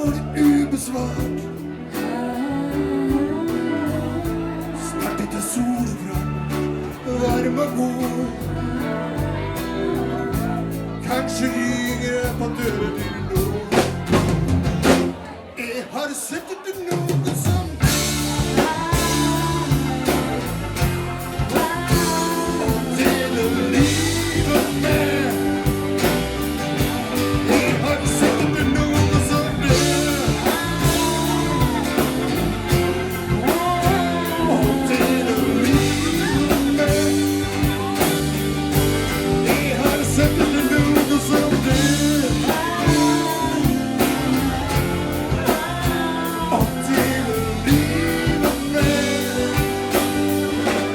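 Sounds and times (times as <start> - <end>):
live rock band playing ballad: 0.0 - 15.6, 16.5 - 50.9
drum kit beat: 12.2 - 15.2, 16.7 - 50.9
bending melody line: 17.8 - 50.9.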